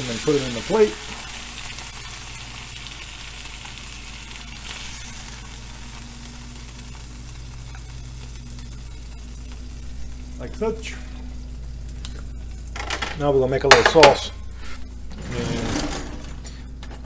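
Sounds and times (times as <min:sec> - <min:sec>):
meat sizzling in a skillet: 0:00.0 - 0:12.8.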